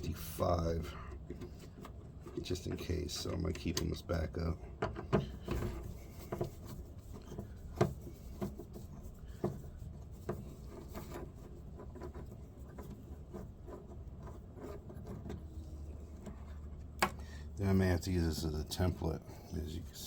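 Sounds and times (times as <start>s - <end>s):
steady low hum: 0.0s - 20.0s
rubbing: 5.3s - 17.0s.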